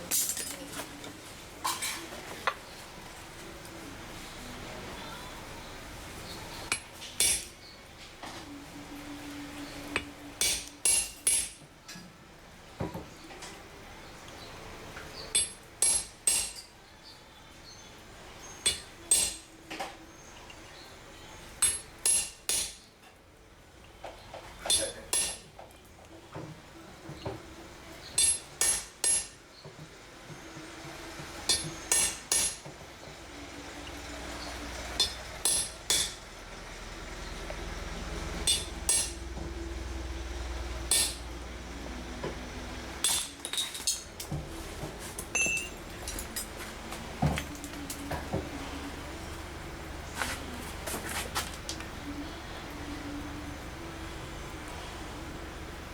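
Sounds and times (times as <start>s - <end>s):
hammer striking steel: 6.7s - 7.6s, 10.0s - 11.6s, 15.3s - 16.7s, 18.6s - 19.4s, 21.6s - 22.8s, 24.7s - 25.5s, 28.2s - 29.4s, 31.5s - 32.7s, 35.0s - 36.2s, 38.4s - 39.5s, 40.9s - 41.4s, 43.0s - 44.3s, 45.3s - 46.6s
faint low hum: 33.1s - 55.9s.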